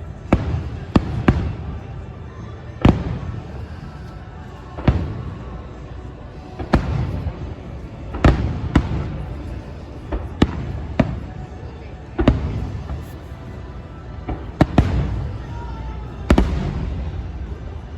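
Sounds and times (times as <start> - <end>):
steady low rumble: 0.0 - 17.9
fireworks booming: 14.3 - 15.6, 16.2 - 17.7.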